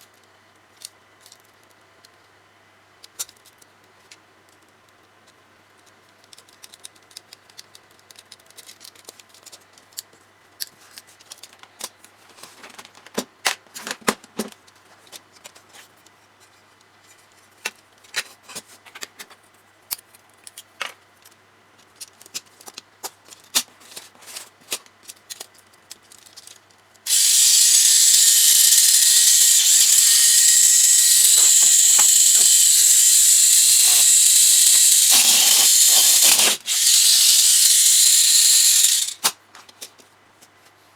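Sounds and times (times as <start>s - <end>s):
plastic parts clicking and tapping: 5.8s - 10.7s, 25.0s - 40.0s
toy car motor high-pitched whir: 27.1s - 39.4s.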